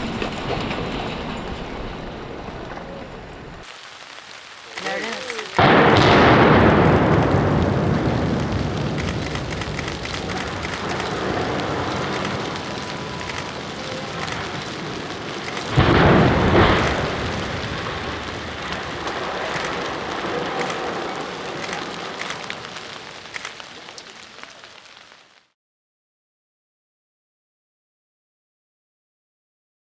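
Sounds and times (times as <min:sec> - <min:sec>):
long rolling rumble: 0:00.0 - 0:03.6, 0:05.1 - 0:24.8
demolition explosion booms: 0:00.0 - 0:03.7, 0:04.7 - 0:23.5
small cracks: 0:03.6 - 0:25.5.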